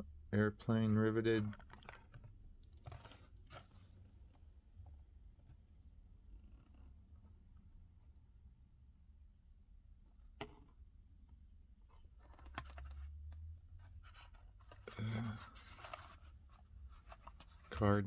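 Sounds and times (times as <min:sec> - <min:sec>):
cardboard and plastic rustling: 0:01.5 - 0:04.3, 0:12.2 - 0:18.0.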